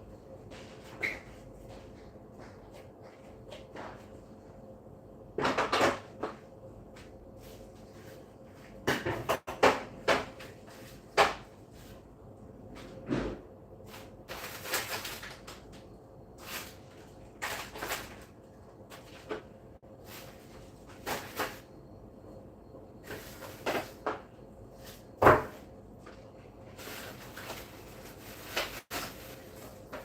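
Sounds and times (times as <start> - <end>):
refrigerator parts knocking and scraping: 18.9 - 21.7, 23.0 - 30.0.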